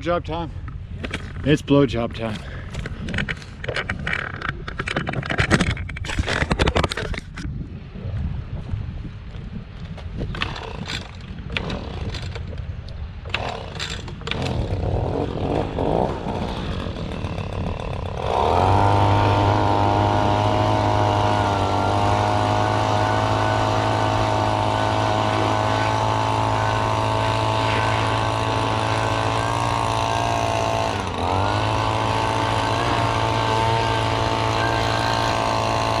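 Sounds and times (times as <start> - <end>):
handling knocks and clatter: 2.2 - 7.5
leaf blower engine running: 13.4 - 36.0.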